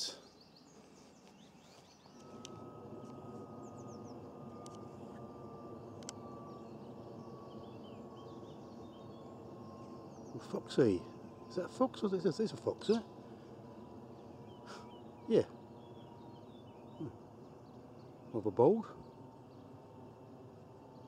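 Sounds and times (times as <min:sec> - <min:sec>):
engine drone with faint whine: 0:00.0 - 0:21.0
small birds chirping: 0:00.0 - 0:21.0
light clicks: 0:06.0 - 0:06.2.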